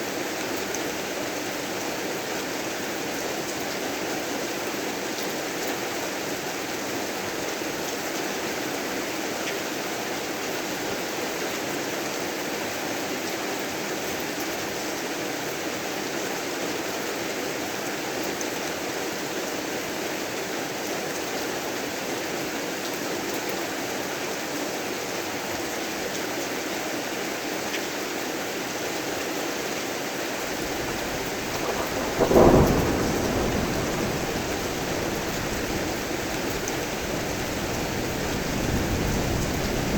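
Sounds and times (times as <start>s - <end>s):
heavy rain falling: 30.4s - 39.9s
thunderclap: 30.4s - 39.9s.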